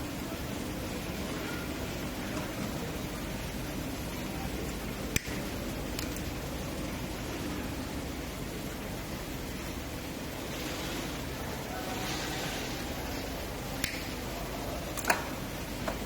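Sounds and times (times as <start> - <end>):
steady background hiss: 0.0 - 16.0
sharp click: 13.8 - 14.1.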